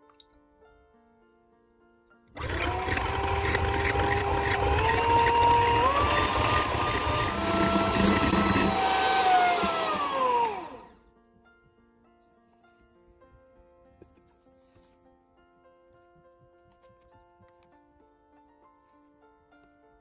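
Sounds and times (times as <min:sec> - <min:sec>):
electric hand mixer whining: 0:02.4 - 0:11.0.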